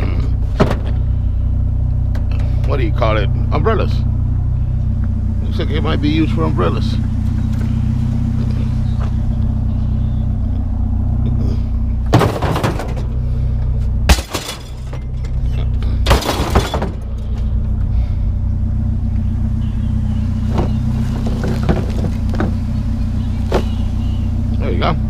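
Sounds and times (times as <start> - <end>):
vehicle engine idling: 0.0 - 25.0
scrap items clattering: 12.1 - 13.1.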